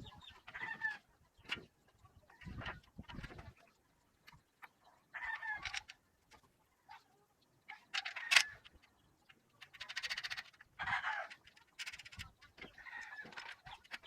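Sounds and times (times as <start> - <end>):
bird calls: 0.0 - 5.9.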